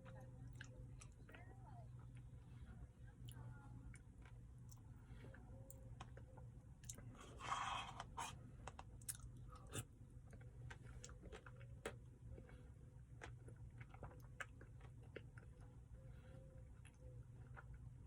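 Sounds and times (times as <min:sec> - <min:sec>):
person chewing and crunching: 0:06.0 - 0:08.3, 0:09.0 - 0:16.0
rustling scrape: 0:07.2 - 0:08.4.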